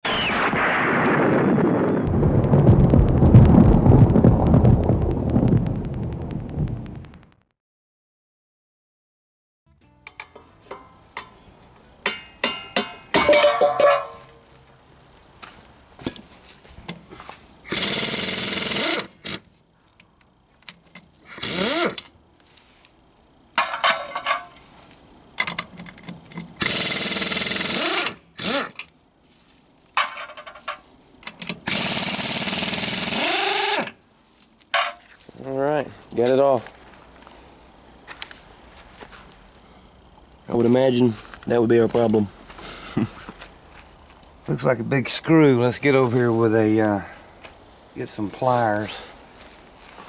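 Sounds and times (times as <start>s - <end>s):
impact wrench hammering lug nuts: 12.1s - 14.2s.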